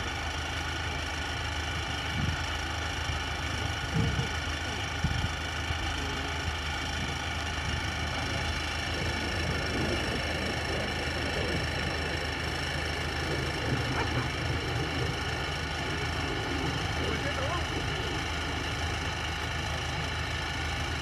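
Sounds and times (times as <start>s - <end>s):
combine harvester drone: 0.0s - 21.0s.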